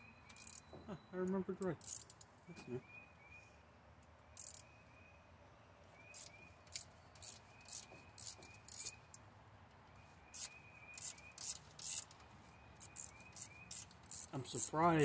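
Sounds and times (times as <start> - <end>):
ratchet wrench clicking: 0.3 - 0.6, 1.7 - 2.3, 4.4 - 4.6, 6.2 - 9.2, 10.3 - 12.2, 12.8 - 15.0.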